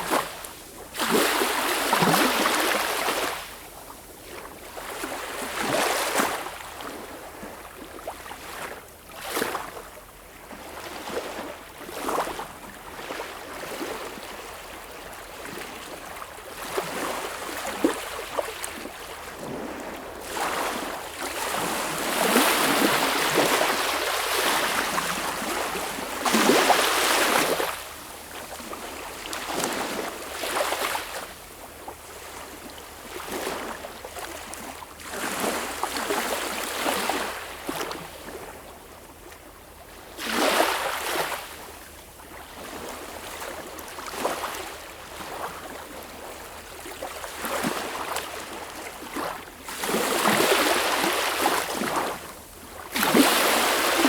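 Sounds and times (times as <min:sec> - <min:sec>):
sea waves breaking: 0:19.4 - 0:27.8, 0:52.9 - 0:54.0.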